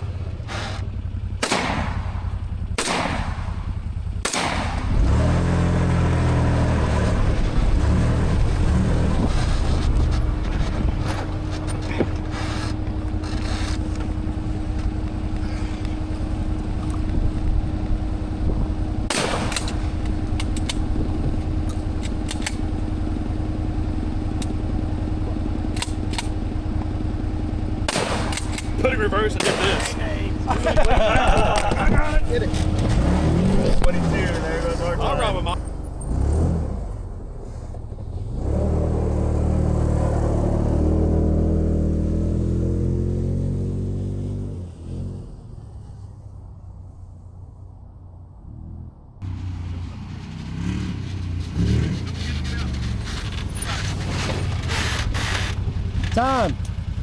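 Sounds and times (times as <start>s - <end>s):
heavy rumbling and jolting: 0.0s - 39.0s, 49.2s - 57.0s
utility vehicle engine at full throttle: 0.0s - 57.0s
sharp bangs: 1.4s - 5.4s, 19.0s - 20.9s, 27.8s - 35.6s.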